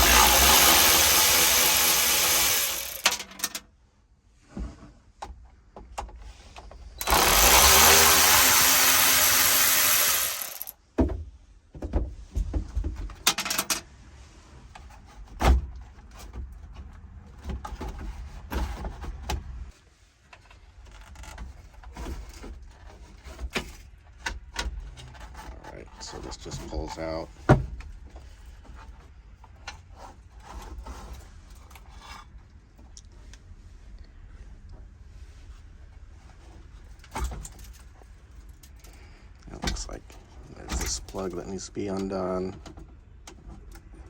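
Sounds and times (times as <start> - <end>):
cordless drill running: 0.0 - 3.2, 7.0 - 10.7
loose screws rattling: 0.0 - 3.6, 7.0 - 10.7.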